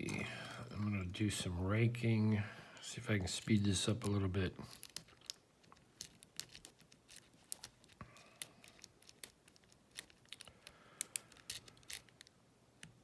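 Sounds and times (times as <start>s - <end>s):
lock pick raking padlock pins: 3.4s - 12.3s.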